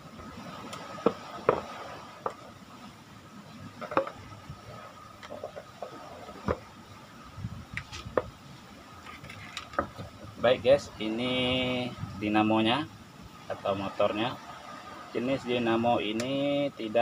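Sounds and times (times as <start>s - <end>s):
clicks and knocks of fan parts: 3.8s - 4.2s, 9.0s - 10.3s.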